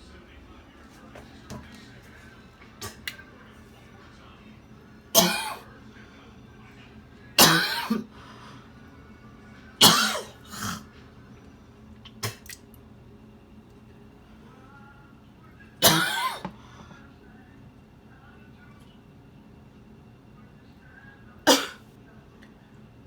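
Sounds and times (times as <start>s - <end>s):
woman coughing: 5.2s - 5.7s, 7.4s - 8.1s, 9.8s - 10.8s, 15.8s - 16.5s, 21.5s - 21.8s.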